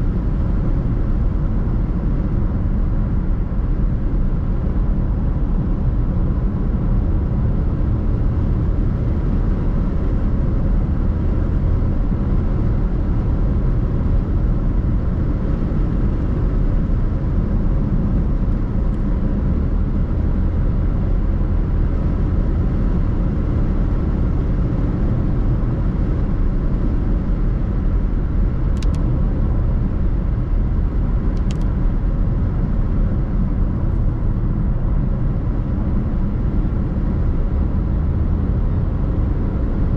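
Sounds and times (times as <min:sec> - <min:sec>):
road and engine rumble: 0:00.0 - 0:39.9
brief clicks: 0:28.8 - 0:29.1, 0:31.4 - 0:31.7.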